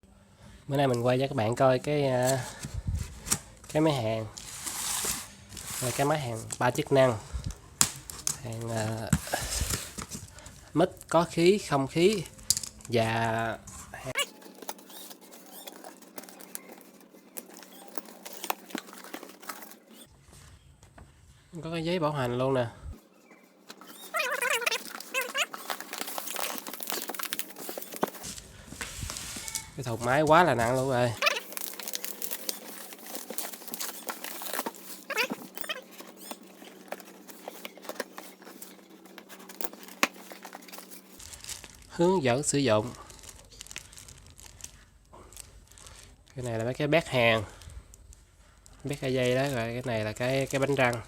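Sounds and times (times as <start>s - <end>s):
hands handling packaging: 12.0s - 20.1s, 23.0s - 51.0s
short squeaky chirps: 14.1s - 20.1s, 23.0s - 28.3s, 31.2s - 41.2s.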